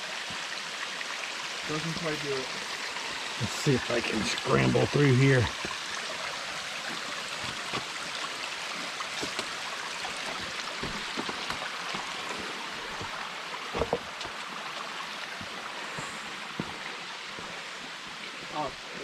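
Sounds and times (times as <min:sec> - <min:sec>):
mountain stream rushing: 0:00.0 - 0:19.0
footsteps on rock: 0:06.9 - 0:08.0, 0:10.2 - 0:14.5, 0:15.4 - 0:16.8.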